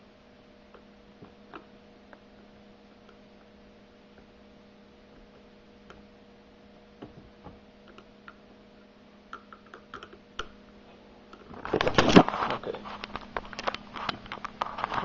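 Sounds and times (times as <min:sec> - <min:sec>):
steady low hum: 0:00.0 - 0:15.0
handling noise: 0:11.4 - 0:15.0.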